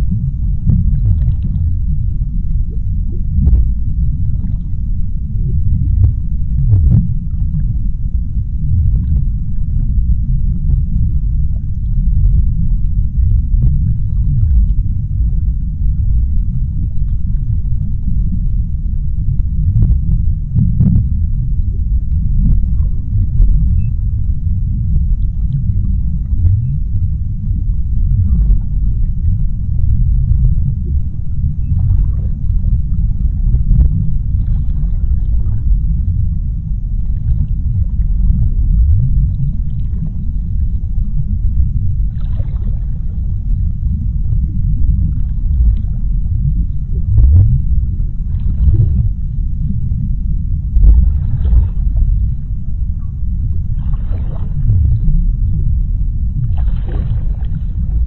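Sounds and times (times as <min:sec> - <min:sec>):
deep underwater rumble: 0:00.0 - 0:58.0.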